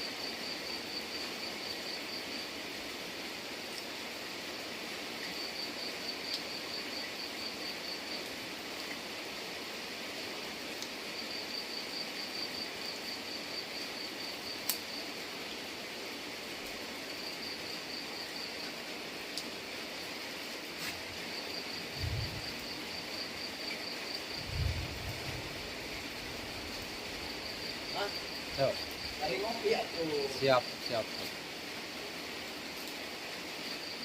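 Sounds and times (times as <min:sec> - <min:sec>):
steady rain hiss: 0:00.0 - 0:34.0
insect trilling: 0:21.1 - 0:31.3.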